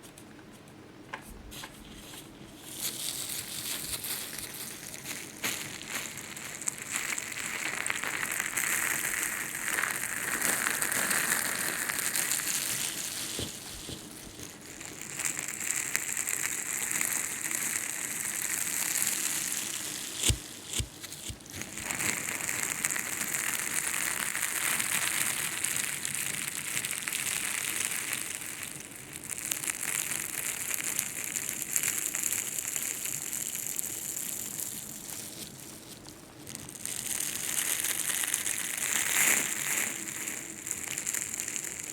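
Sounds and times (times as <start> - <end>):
ear pick scraping and rustling: 12.2 - 14.5.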